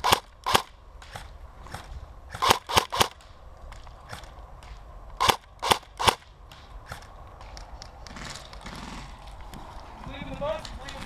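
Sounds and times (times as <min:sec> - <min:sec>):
airsoft gun shots: 0:00.0 - 0:03.2, 0:05.2 - 0:07.1.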